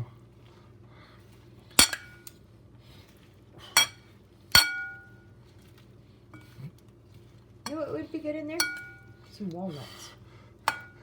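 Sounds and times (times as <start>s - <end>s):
spoons clinking against bowl: 3.8s - 5.2s, 8.6s - 9.2s, 10.7s - 11.0s.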